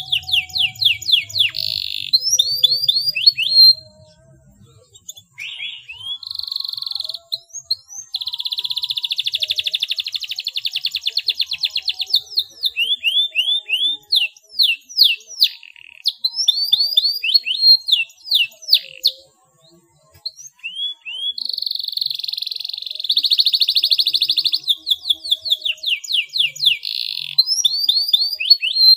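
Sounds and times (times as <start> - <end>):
canary singing: 0.0 - 28.9.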